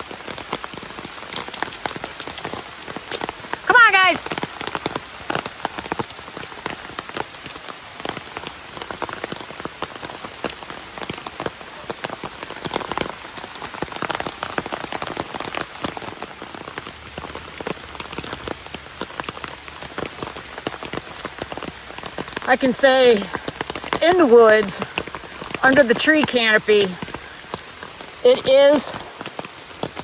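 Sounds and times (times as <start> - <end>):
heavy rain on an umbrella: 0.0 - 30.0.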